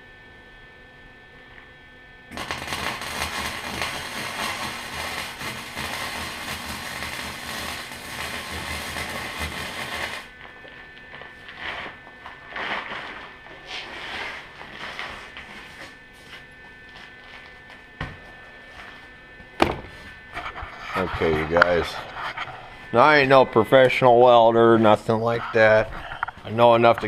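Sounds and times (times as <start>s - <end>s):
welding arc crackling: 2.3s - 17.9s, 20.3s - 27.0s.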